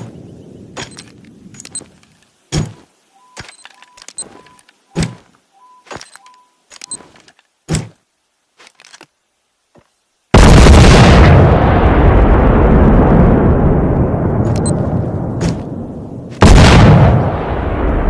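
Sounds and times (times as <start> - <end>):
high electronic beeps: 3.1 - 7.1
sharp mechanical clicks: 3.3 - 5.2, 14.5 - 14.8.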